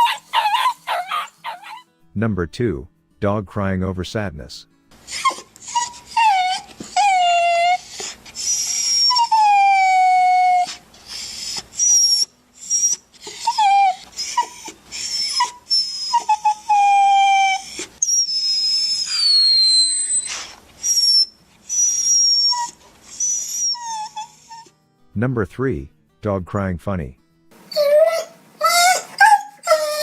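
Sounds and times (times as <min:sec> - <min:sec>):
dog whining and crying: 0:00.0 - 0:01.9, 0:05.0 - 0:24.8, 0:27.6 - 0:30.0.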